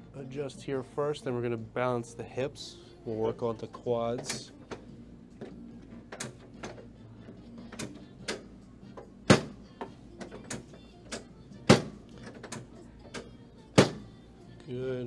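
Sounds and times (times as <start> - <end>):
loud thuds on treatment table: 9.3 - 9.6, 13.8 - 14.0.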